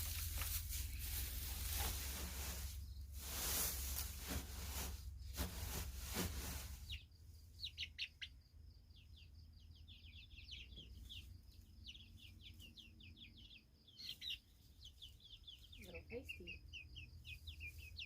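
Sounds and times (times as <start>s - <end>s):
rustling: 0.0s - 7.1s
chickens peeping: 0.0s - 18.0s.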